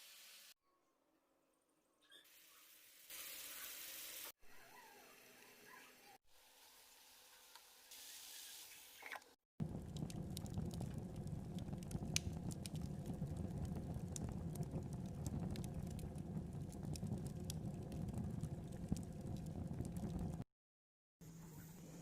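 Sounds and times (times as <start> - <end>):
low cooking rumble: 9.6 - 20.4
food popping and crackling: 9.6 - 20.5.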